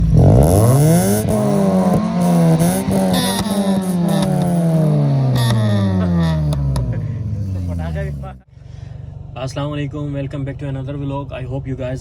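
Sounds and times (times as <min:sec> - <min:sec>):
car engine revving: 0:00.0 - 0:08.5.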